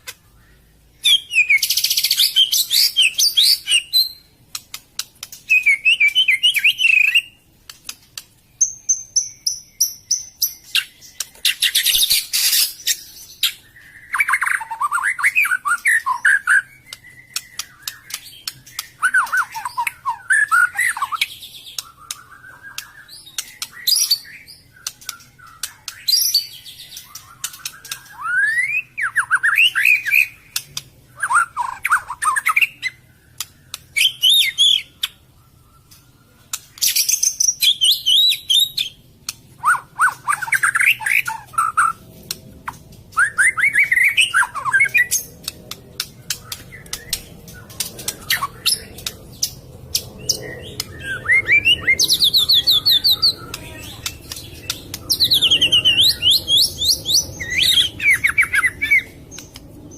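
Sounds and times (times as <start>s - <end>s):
songbird whistling song: 0.0s - 59.9s
bird sharp clicks: 4.5s - 8.4s, 15.5s - 26.4s, 27.0s - 28.3s, 31.9s - 34.1s, 44.3s - 51.1s, 51.9s - 59.8s
high rattling bird trill: 8.5s - 32.9s, 43.2s - 59.9s.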